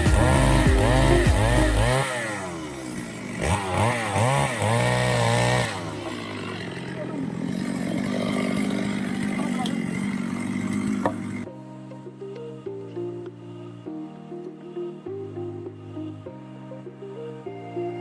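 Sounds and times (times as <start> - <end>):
chainsaw engine revving: 0.0 - 11.5.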